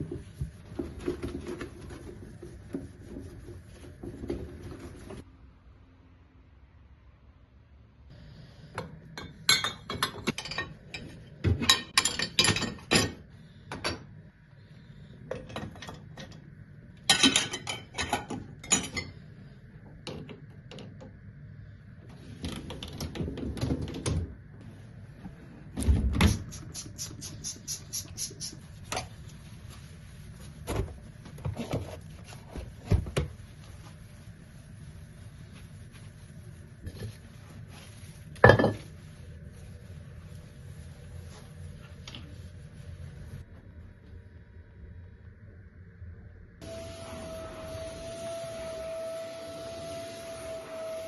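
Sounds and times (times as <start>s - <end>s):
dishes and cutlery clattering: 9.2s - 13.2s, 17.1s - 19.2s.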